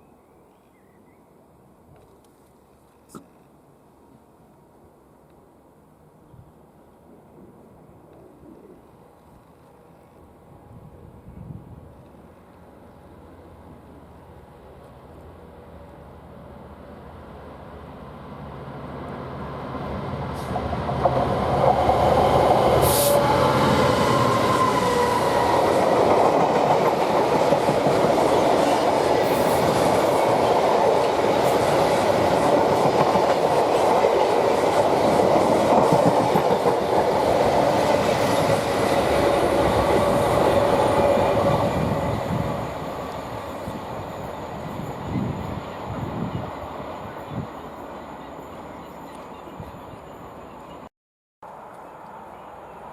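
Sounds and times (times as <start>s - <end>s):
train passing: 10.2s - 50.8s.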